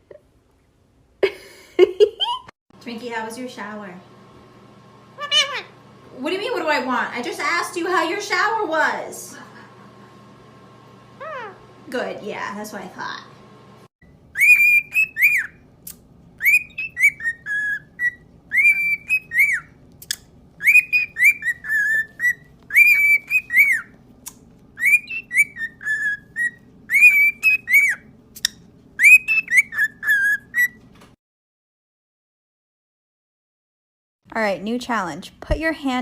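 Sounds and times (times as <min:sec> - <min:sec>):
parrot whistling a phrase: 0:14.4 - 0:15.6, 0:16.4 - 0:19.7, 0:20.6 - 0:23.9, 0:24.8 - 0:28.0, 0:29.0 - 0:30.8.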